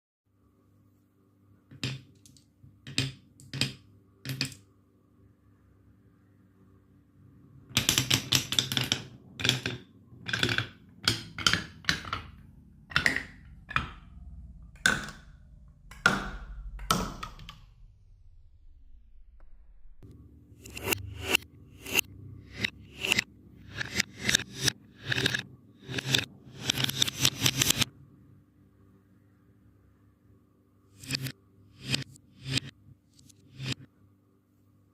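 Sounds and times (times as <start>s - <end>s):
marbles clacking on wooden run: 7.8s - 14.1s, 14.8s - 15.2s
low rolling rumble: 12.3s - 20.0s.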